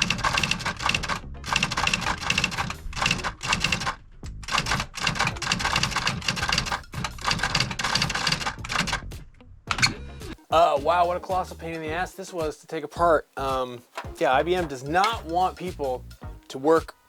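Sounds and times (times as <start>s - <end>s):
electronic typewriter typing: 0.0s - 9.1s.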